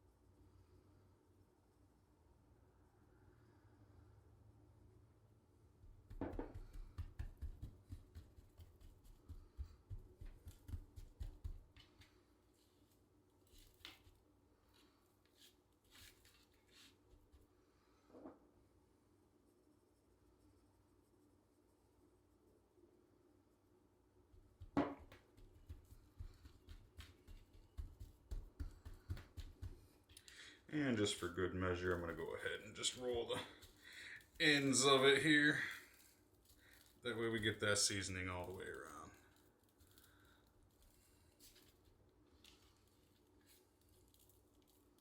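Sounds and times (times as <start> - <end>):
hands rubbing meat: 5.9 - 17.6, 24.4 - 45.0.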